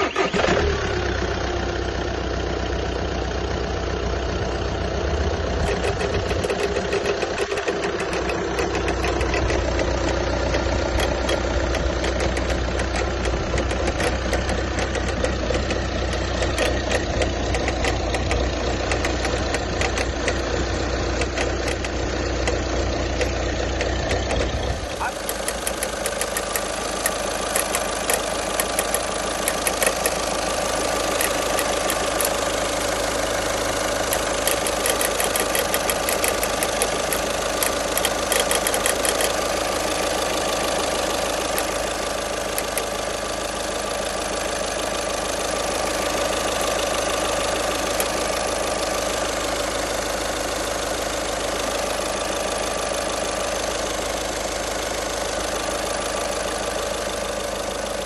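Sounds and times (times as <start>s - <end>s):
car engine idling: 0.0s - 58.0s
engine pulley knocking and clicking: 4.5s - 58.0s.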